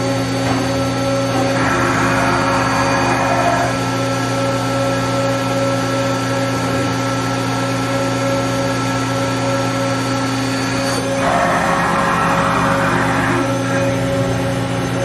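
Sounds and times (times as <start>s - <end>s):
machine spindle whining: 1.3s - 4.3s, 10.0s - 15.0s.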